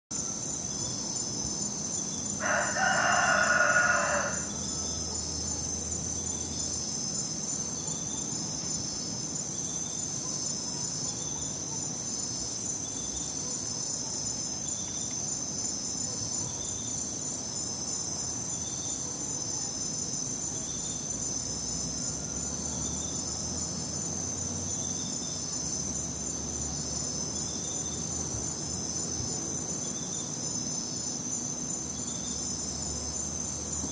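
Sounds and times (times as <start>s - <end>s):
crickets chirping: 0.1s - 33.9s
rooster crowing: 2.4s - 4.9s.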